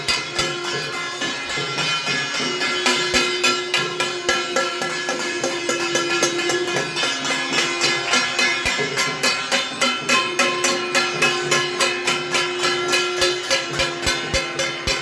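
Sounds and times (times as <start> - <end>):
percussive beat: 0.0 - 15.0.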